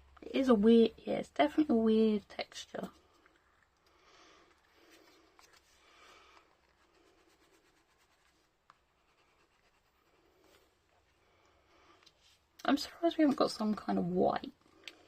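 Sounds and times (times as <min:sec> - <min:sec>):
dry art material scratching paper: 0:06.5 - 0:10.6.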